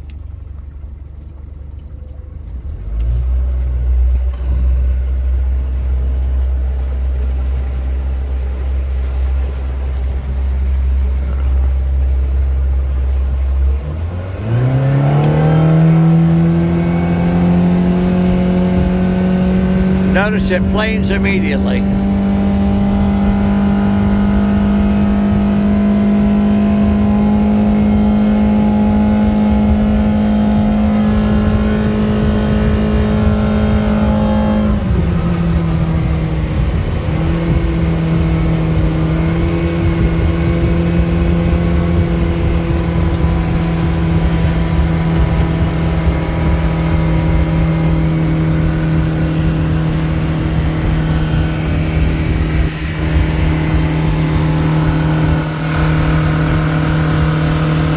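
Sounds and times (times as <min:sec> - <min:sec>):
outboard motor running: 0:00.0 - 0:02.6, 0:04.1 - 0:14.1, 0:35.3 - 0:57.9.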